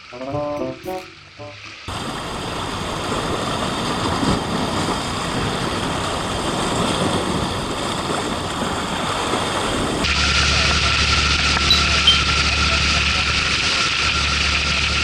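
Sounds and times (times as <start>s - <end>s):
short musical jingle: 0.2s - 1.9s
sea surf: 1.4s - 12.9s
wind: 1.4s - 15.0s.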